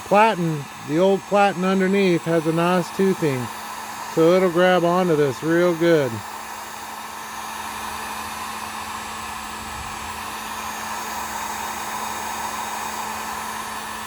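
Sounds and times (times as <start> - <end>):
heat gun blowing air: 0.0 - 14.0.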